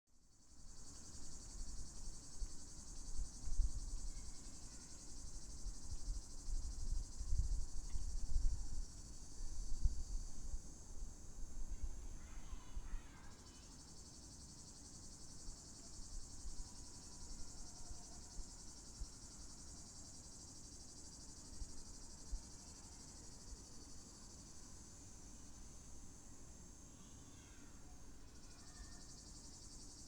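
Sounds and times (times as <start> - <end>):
faint chirps: 11.7 - 14.1, 26.9 - 30.0
cicadas buzzing: 11.8 - 16.5, 23.0 - 30.0.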